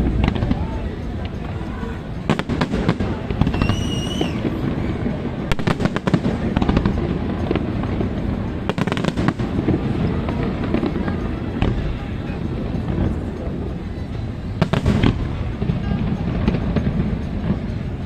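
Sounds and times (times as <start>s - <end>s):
fireworks booming: 0.0s - 18.0s
fireworks crackling: 0.0s - 18.0s
short high whistle: 3.4s - 5.0s.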